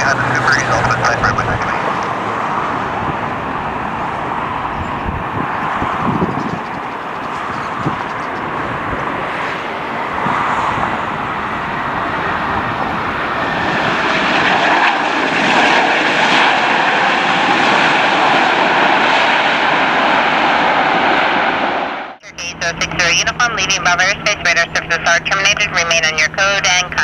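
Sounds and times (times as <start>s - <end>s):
jet engines roaring: 0.0s - 27.0s.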